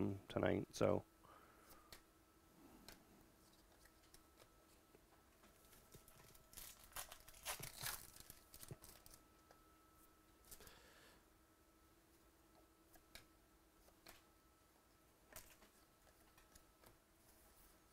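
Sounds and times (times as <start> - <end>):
faint steady hum: 0.0 - 17.9
trading cards crinkling and tearing: 5.6 - 9.2.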